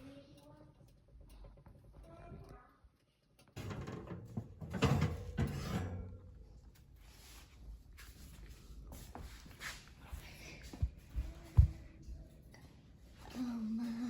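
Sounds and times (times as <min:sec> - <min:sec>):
oven door opening: 0:03.6 - 0:06.4.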